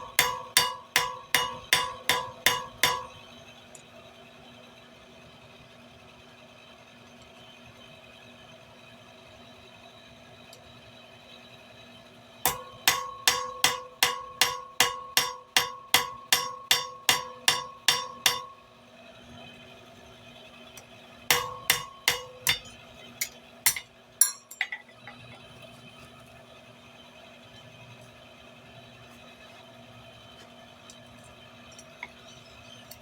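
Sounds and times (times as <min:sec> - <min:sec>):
hammer striking metal on anvil: 0:00.0 - 0:03.2, 0:12.5 - 0:18.6, 0:21.3 - 0:25.0.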